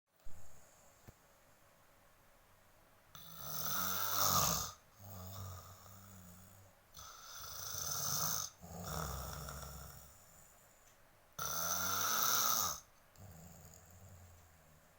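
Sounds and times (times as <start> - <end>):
person snoring heavily: 3.2 - 10.4, 11.4 - 14.2.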